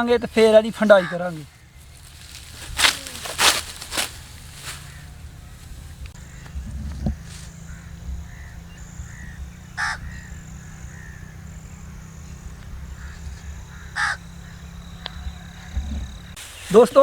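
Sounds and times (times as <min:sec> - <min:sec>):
crow cawing: 0:00.0 - 0:06.6, 0:07.6 - 0:11.6, 0:12.8 - 0:16.4.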